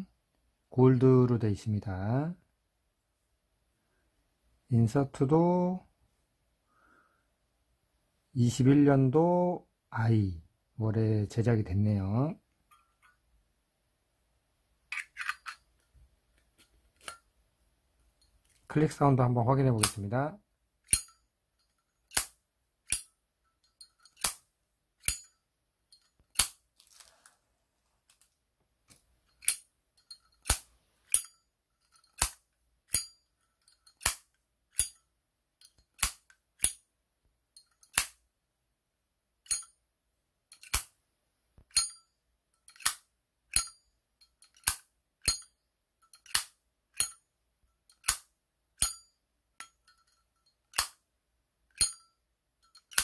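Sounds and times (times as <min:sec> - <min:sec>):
lighter lid clicking open and shut: 0:35.6 - 0:36.8, 0:42.7 - 0:43.7, 0:44.5 - 0:45.5, 0:48.0 - 0:48.2.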